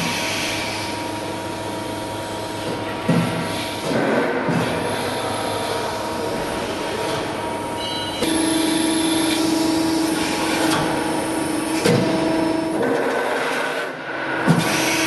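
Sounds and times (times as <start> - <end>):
machine hum: 0.0 - 15.0
steady machine tone: 4.9 - 15.0.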